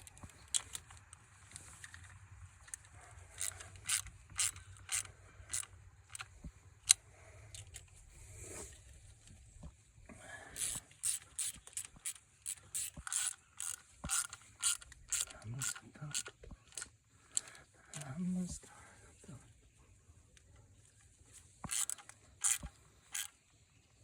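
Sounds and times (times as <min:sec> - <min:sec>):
ratchet wrench clicking: 0:00.1 - 0:07.8, 0:10.6 - 0:17.5, 0:21.6 - 0:23.4.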